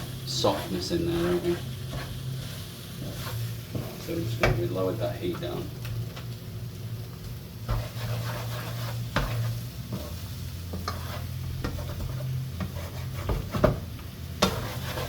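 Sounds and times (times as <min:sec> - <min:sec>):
utensil scraping a pan: 0:00.0 - 0:04.5, 0:07.6 - 0:15.0
eggs sizzling in a frying pan: 0:00.0 - 0:15.0.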